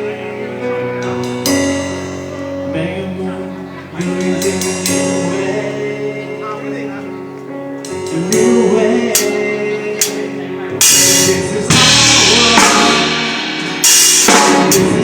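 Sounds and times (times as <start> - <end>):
live band playing: 0.0 - 15.0
person singing: 0.0 - 15.0
cymbal crashes: 10.8 - 15.0.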